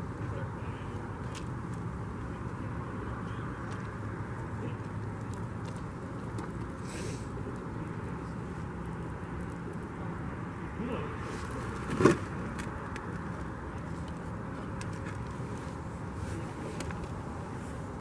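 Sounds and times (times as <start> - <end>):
brief hiss: 6.8 - 7.3.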